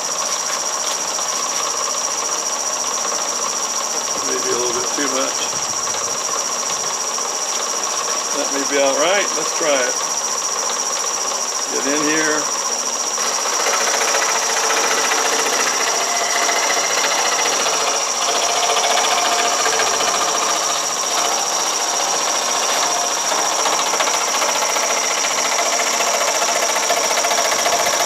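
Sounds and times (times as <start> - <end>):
jigsaw cutting wood: 13.1 - 28.0.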